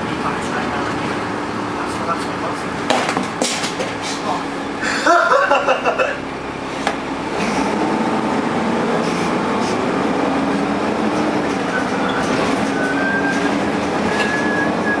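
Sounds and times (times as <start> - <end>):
bus cooling fan rushing: 0.0 - 15.0
bus engine low hum: 0.0 - 15.0.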